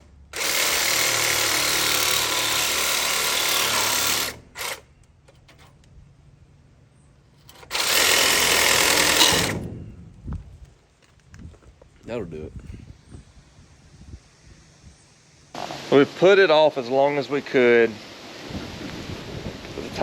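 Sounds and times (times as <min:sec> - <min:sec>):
handheld power tool running: 0:00.3 - 0:04.9, 0:07.5 - 0:09.7.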